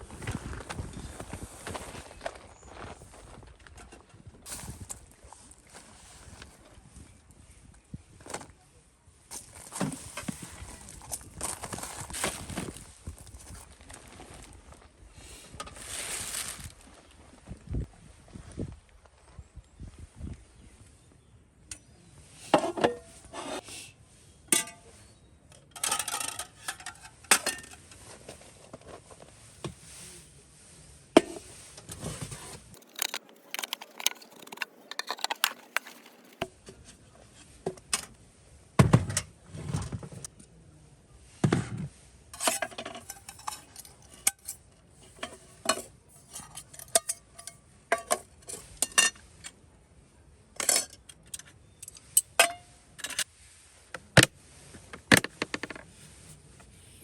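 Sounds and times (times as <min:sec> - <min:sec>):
dishes and cutlery clinking: 0:32.8 - 0:36.4, 0:42.4 - 0:49.2.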